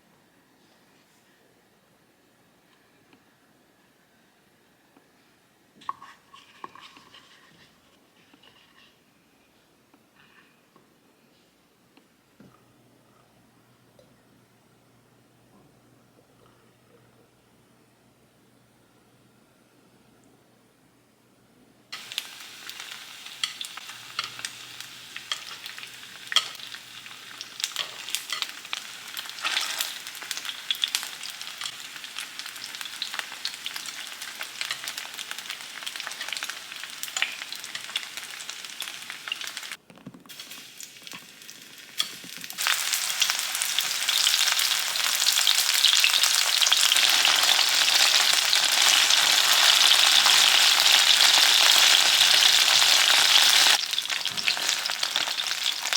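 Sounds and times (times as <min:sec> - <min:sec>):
food frying in hot oil: 0:22.0 - 0:55.9.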